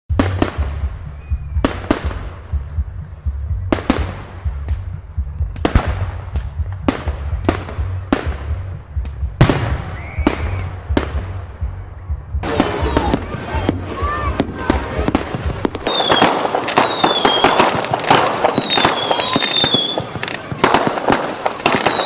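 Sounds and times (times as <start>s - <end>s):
fireworks bangs and crackle: 0.1s - 3.0s, 3.6s - 22.0s
low rumble: 0.1s - 18.5s
firework whistles: 9.7s - 10.8s, 15.8s - 22.0s.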